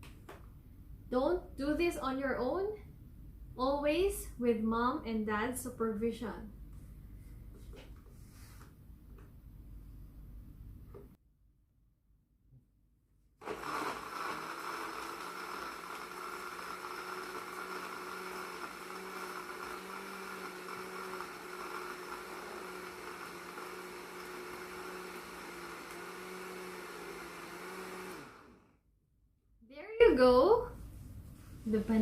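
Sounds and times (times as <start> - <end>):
blender motor running: 13.4 - 28.7.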